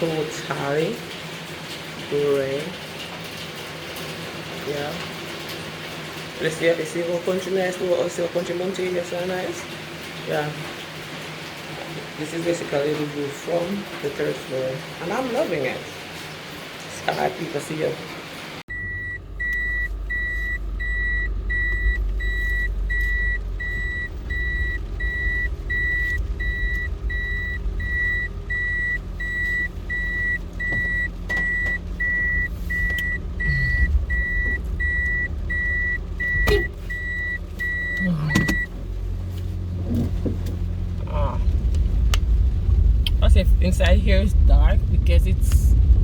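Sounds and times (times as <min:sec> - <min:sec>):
car warning chime beeping: 0:18.7 - 0:39.0
car engine idling: 0:18.7 - 0:46.0.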